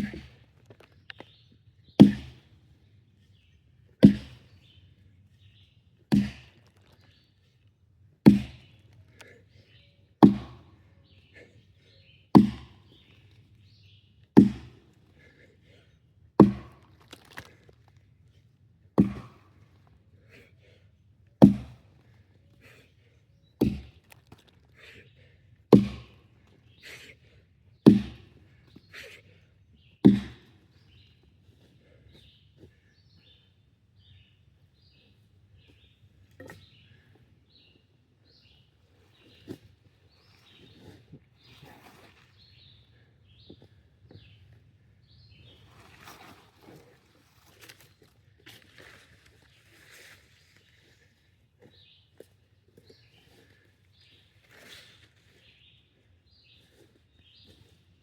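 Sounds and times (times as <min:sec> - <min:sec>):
axe chopping wood: 0:00.0 - 0:00.4, 0:02.0 - 0:02.4, 0:04.0 - 0:04.4, 0:06.1 - 0:06.8, 0:08.2 - 0:08.8, 0:10.2 - 0:10.7, 0:12.3 - 0:13.1, 0:14.4 - 0:14.9, 0:16.4 - 0:17.6, 0:19.0 - 0:19.6, 0:21.4 - 0:21.9, 0:23.6 - 0:24.5, 0:25.7 - 0:26.2, 0:27.8 - 0:28.4, 0:30.0 - 0:30.6.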